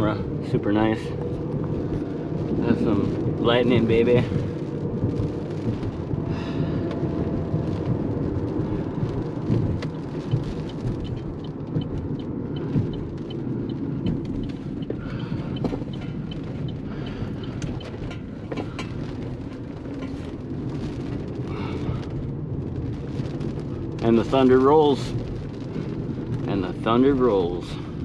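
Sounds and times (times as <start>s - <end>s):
car cabin rumble: 0.0s - 28.0s.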